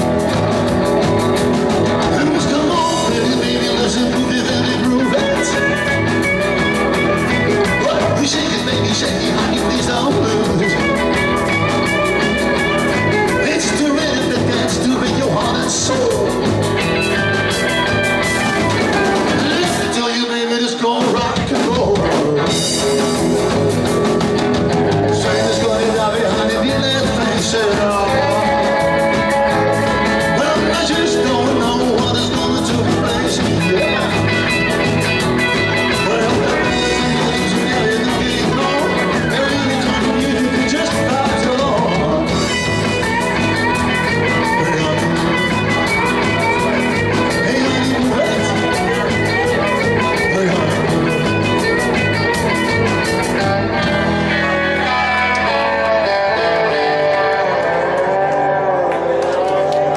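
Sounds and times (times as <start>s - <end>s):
rock band playing live: 0.0s - 59.9s.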